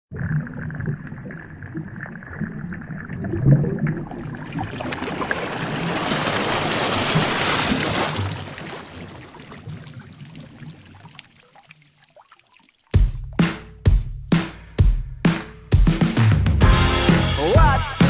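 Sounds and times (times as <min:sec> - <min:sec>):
rushing water-like noise: 0:04.4 - 0:12.8.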